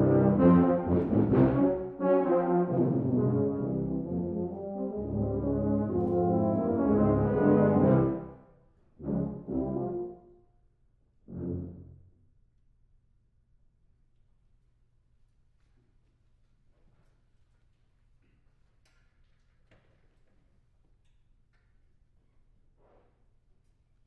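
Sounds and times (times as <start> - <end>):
tuba and euphonium chords: 0.0 - 10.3, 11.2 - 12.1.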